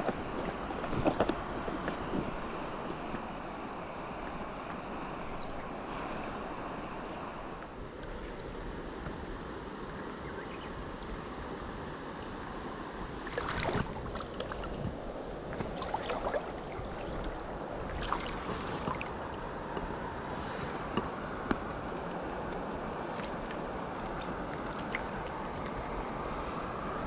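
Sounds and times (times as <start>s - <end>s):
stream water flowing: 2.5s - 27.0s
water splashing: 13.1s - 27.0s.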